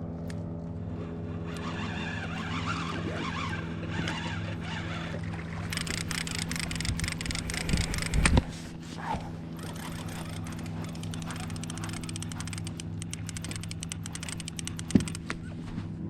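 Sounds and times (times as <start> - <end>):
boat engine humming: 0.0 - 15.5
fishing reel clicking rapidly: 5.6 - 8.4, 9.6 - 15.2.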